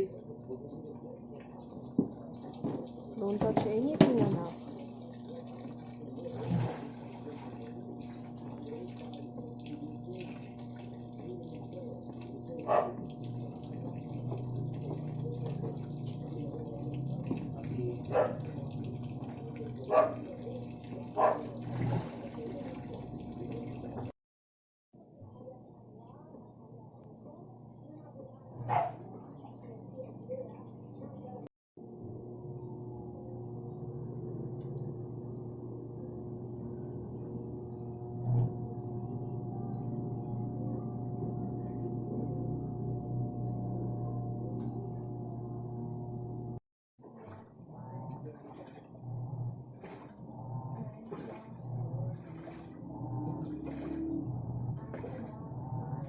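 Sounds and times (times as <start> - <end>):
water filling washing machine: 0.0 - 24.2, 25.2 - 56.0
washing machine thump: 2.0 - 4.6.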